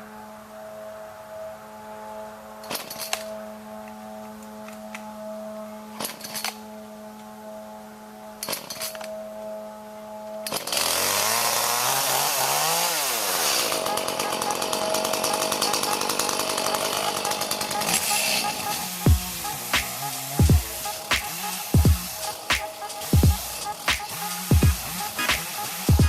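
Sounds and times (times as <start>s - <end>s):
chainsaw cutting wood: 10.5s - 26.0s.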